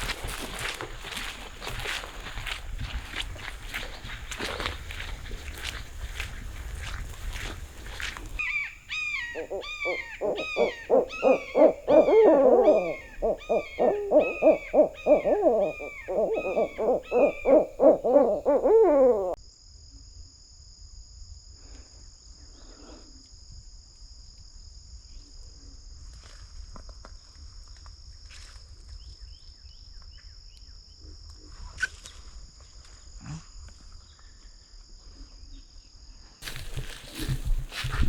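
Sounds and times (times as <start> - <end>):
owls hooting rapidly: 8.4 - 19.4.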